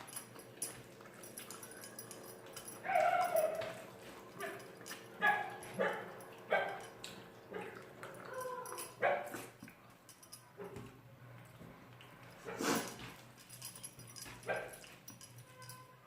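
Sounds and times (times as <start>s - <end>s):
dog yipping and whimpering: 2.8s - 3.8s, 8.2s - 9.3s.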